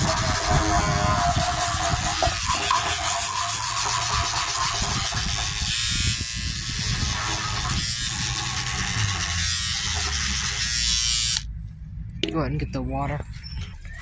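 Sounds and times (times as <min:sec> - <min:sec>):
toothbrush scrubbing a dish: 0:00.0 - 0:10.6.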